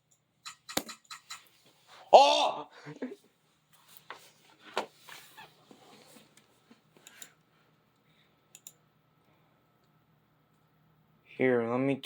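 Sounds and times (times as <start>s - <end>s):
sharp clicks and taps: 0.4s - 1.5s.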